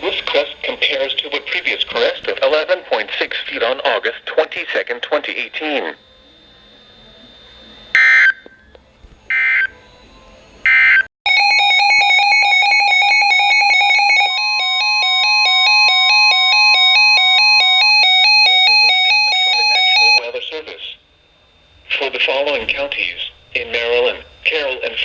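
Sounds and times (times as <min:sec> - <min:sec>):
warbling electronic alert tone: 0:09.3 - 0:20.2.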